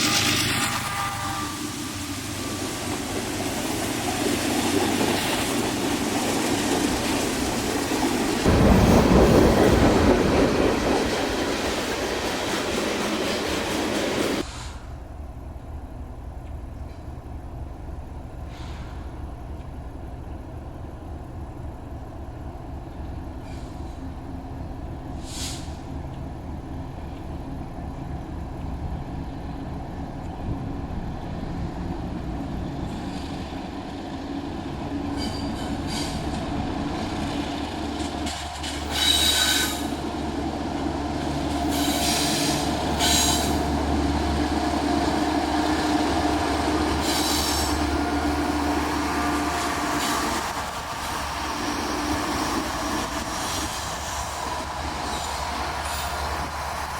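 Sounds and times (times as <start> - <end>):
train rumbling past: 0.0 - 56.9
high wheel squeal: 35.0 - 36.6, 38.6 - 40.1, 41.6 - 43.8, 46.8 - 48.5.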